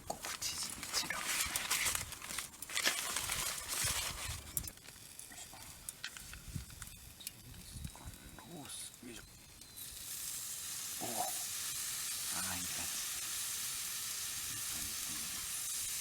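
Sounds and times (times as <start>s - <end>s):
rustling and crinkling handling noise: 0.0s - 7.0s.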